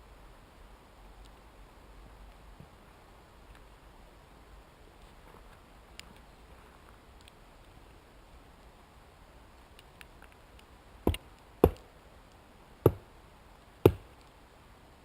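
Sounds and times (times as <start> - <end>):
wood knocking on wood: 11.1 - 11.8, 13.9 - 14.1.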